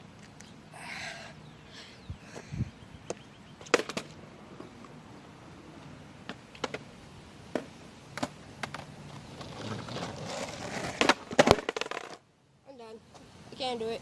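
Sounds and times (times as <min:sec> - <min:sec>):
skateboard wheels rolling: 0:03.1 - 0:12.3
skateboard landing clacks: 0:03.6 - 0:04.2, 0:07.5 - 0:10.0, 0:10.6 - 0:12.2
skateboard deck knocks: 0:10.9 - 0:12.2.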